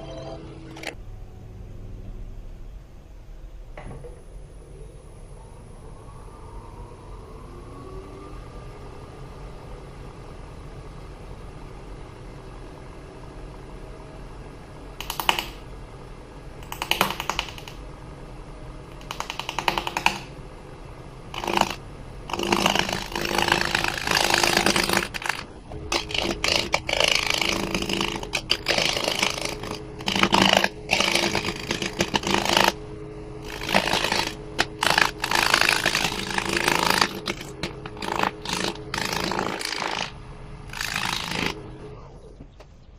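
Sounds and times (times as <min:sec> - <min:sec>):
tool scraping spinning wood: 0:21.3 - 0:32.8, 0:33.4 - 0:41.7
wood lathe humming: 0:21.4 - 0:32.8, 0:33.4 - 0:41.6.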